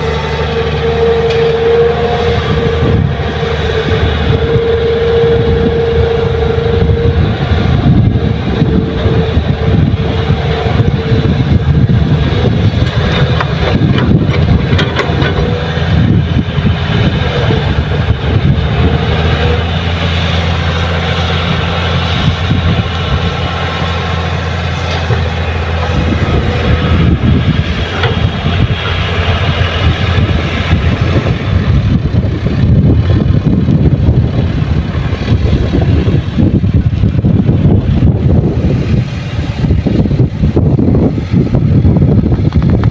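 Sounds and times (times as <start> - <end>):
heavy diesel engines droning: 0.0 - 42.9.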